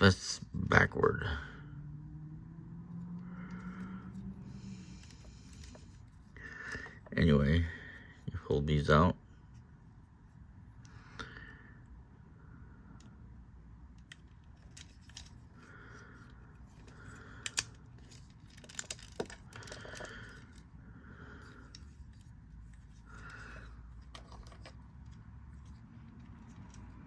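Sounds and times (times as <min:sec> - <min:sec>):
plastic parts rubbing: 0:03.4 - 0:07.2, 0:14.0 - 0:27.0
plastic pieces snapping clicks: 0:17.1 - 0:20.6.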